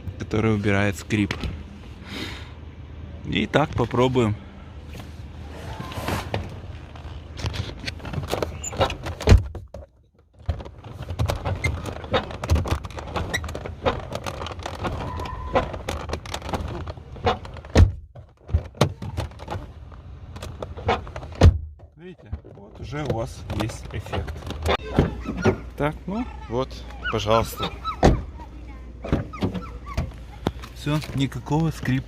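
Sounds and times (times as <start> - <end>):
car door opening and shutting: 4.8 - 32.0.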